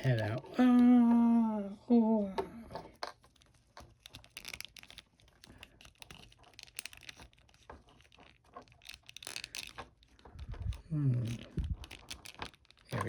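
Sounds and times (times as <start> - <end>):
hard plastic clicking and scraping: 0.0 - 1.2, 2.4 - 13.0.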